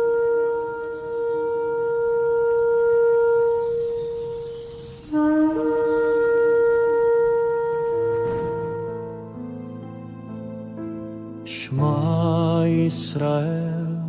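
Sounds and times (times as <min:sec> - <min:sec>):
shofar blowing: 0:00.0 - 0:09.4.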